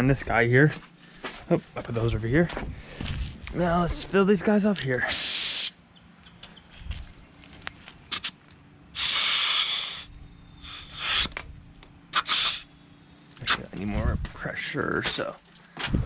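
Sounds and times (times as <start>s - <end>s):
compressed air hissing: 5.0s - 5.8s, 8.1s - 8.4s, 9.0s - 11.4s, 12.1s - 12.7s.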